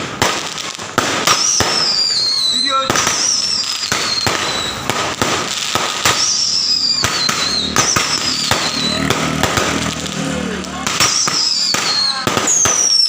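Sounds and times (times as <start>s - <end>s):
fireworks bangs and crackling: 0.0s - 13.0s
descending firework whistles: 1.2s - 10.4s, 11.0s - 13.0s.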